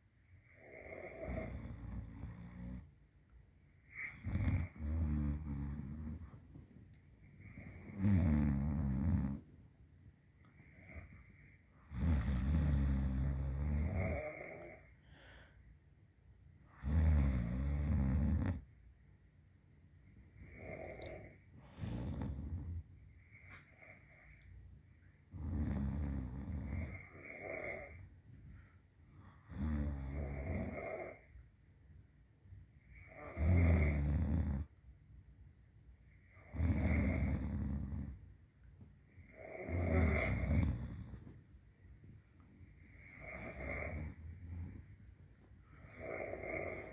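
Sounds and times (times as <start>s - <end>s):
people snoring: 0.4s - 2.9s, 3.9s - 6.3s, 7.4s - 9.4s, 10.6s - 15.4s, 16.7s - 18.6s, 20.4s - 24.4s, 25.3s - 28.0s, 29.4s - 31.3s, 32.9s - 34.7s, 36.2s - 38.2s, 39.2s - 41.2s, 42.9s - 44.8s, 45.7s - 46.9s.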